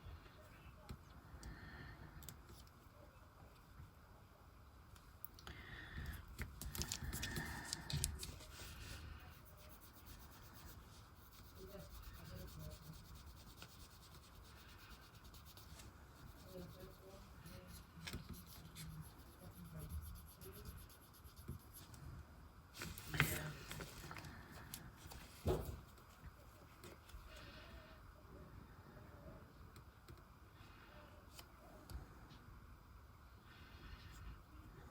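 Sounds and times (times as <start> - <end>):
rubbing and scraping on nails: 6.4 - 21.9.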